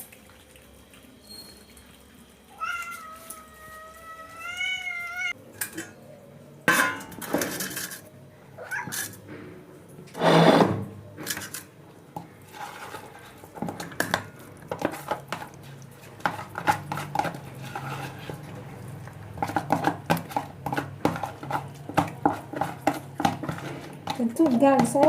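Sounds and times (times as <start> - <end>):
dishes and bowls clinking: 6.7 - 8.1.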